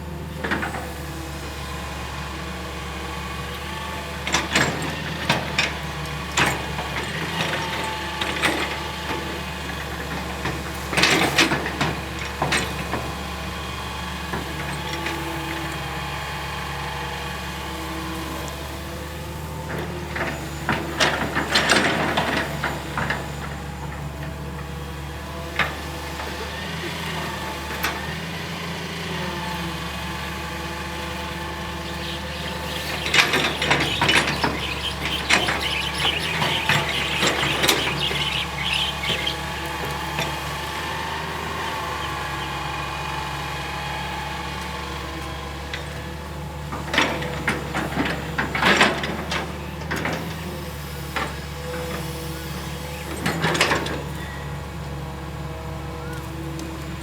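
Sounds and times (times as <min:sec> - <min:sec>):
excavator diesel engine running: 0:00.0 - 0:57.0
machine clatter and squeaks: 0:04.2 - 0:13.2, 0:14.3 - 0:15.8, 0:19.7 - 0:24.4, 0:31.0 - 0:43.4, 0:45.6 - 0:54.6.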